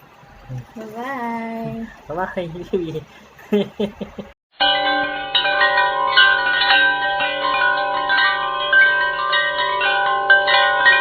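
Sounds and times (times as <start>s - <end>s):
ringing bell chime music: 4.6s - 11.0s.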